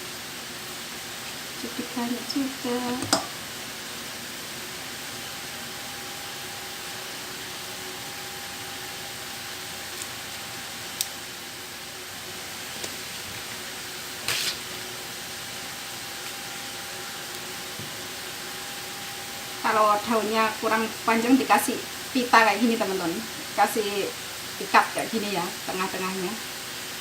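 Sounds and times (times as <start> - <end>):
steady hiss: 0.0 - 27.0
leaves crinkling: 12.4 - 14.8.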